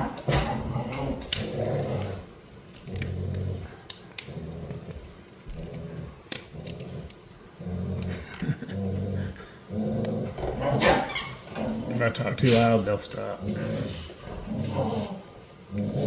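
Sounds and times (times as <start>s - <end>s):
dogs growling in play: 0.0s - 16.0s.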